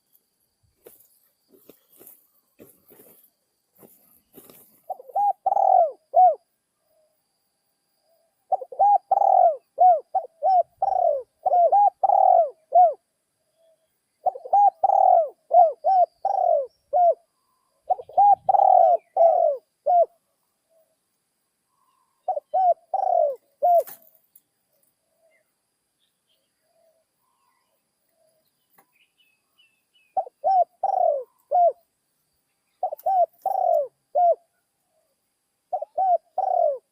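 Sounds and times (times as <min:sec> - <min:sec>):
dove cooing: 0:04.3 - 0:07.1, 0:08.5 - 0:20.9, 0:21.8 - 0:24.1, 0:30.2 - 0:31.8, 0:32.8 - 0:35.1, 0:35.7 - 0:36.9.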